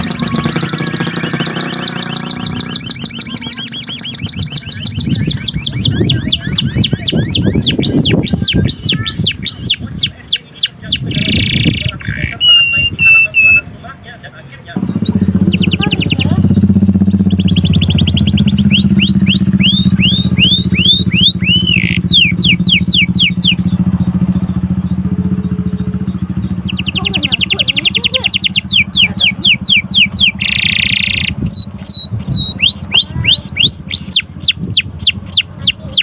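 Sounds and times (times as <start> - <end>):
canary singing: 0.0 - 36.0
low engine-like hum: 0.0 - 36.0.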